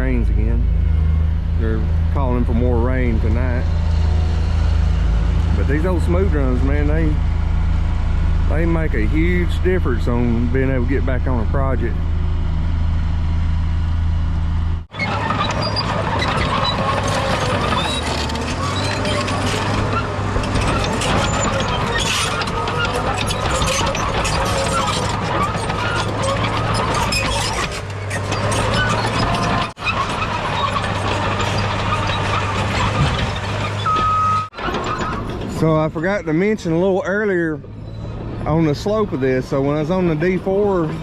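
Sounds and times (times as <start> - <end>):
diesel engine low hum: 0.0 - 41.0
clattering machine: 14.9 - 36.5
high squeaks: 14.9 - 36.9, 37.7 - 38.2.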